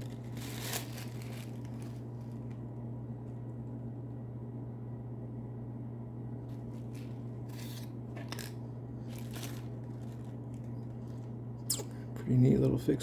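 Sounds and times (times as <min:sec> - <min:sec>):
steady low hum: 0:00.0 - 0:13.0
knife and sheath scraping: 0:07.5 - 0:08.5.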